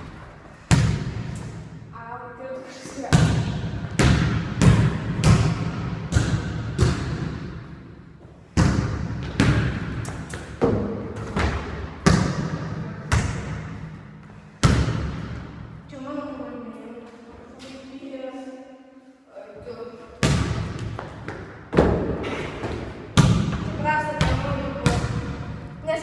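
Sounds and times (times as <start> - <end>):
heavy echoing thuds: 2.9 - 15.9, 20.2 - 26.0.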